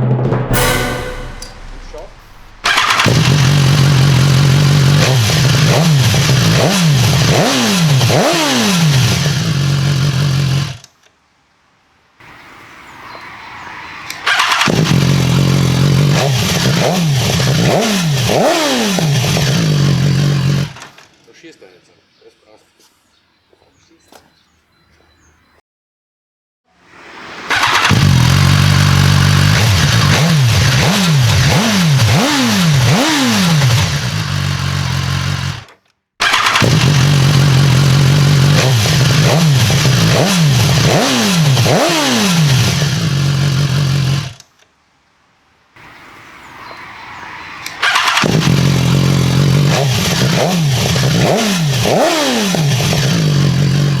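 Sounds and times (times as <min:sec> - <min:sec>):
motorcycle engine idling and revving: 0:02.6 - 0:10.9, 0:14.0 - 0:21.2, 0:27.5 - 0:44.5, 0:47.6 - 0:54.0.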